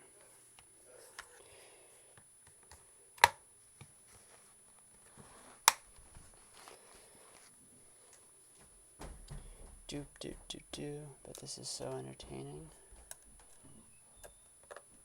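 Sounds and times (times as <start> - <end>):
sharp plastic snaps: 2.4 - 3.4, 5.6 - 6.0.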